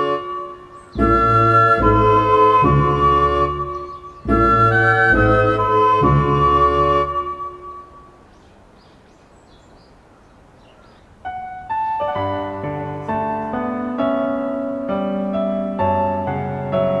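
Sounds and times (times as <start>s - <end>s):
gentle piano music: 0.0s - 8.6s, 10.7s - 17.0s
faint high chirps: 3.6s - 4.9s.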